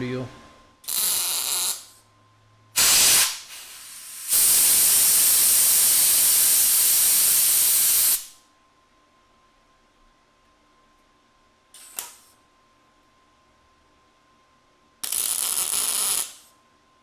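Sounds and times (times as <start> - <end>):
compressed-air blow gun hissing: 2.8 - 8.3.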